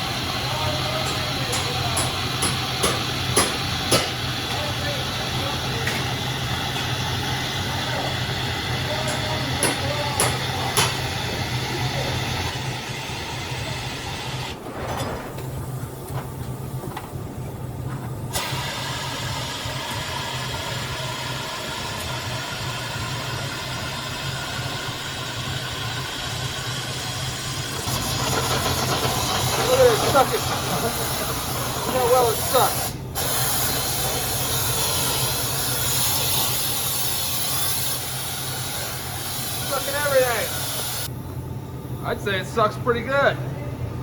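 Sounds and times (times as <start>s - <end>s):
suction gun hissing: 24.8s - 41.1s.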